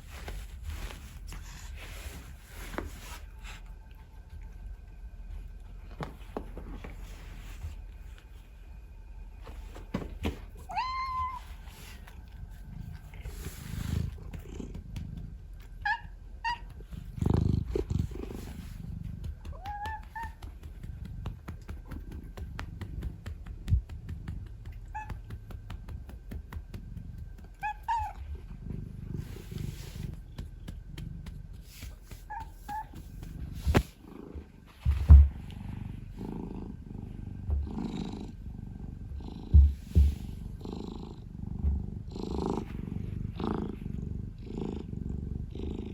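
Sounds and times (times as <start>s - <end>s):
cat meowing: 10.7s - 11.5s, 19.5s - 20.5s, 27.6s - 28.2s
cat purring: 11.3s - 45.9s.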